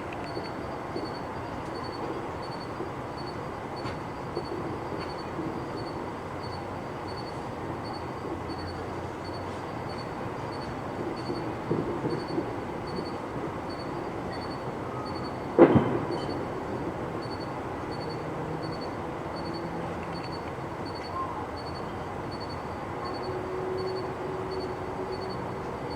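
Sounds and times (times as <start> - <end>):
firework bang: 15.6 - 16.5.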